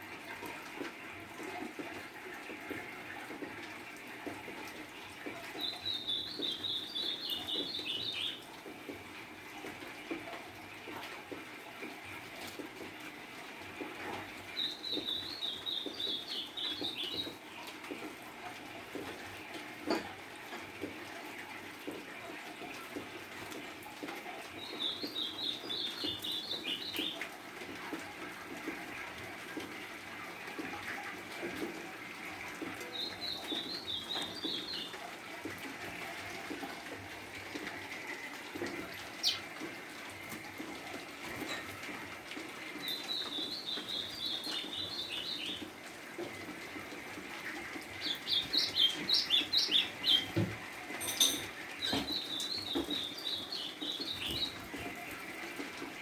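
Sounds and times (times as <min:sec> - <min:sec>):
bird chirping song: 0:05.6 - 0:08.5, 0:14.5 - 0:17.4, 0:24.5 - 0:27.2, 0:32.8 - 0:35.0, 0:39.2 - 0:39.5, 0:42.8 - 0:45.6, 0:47.9 - 0:50.4, 0:51.8 - 0:55.0.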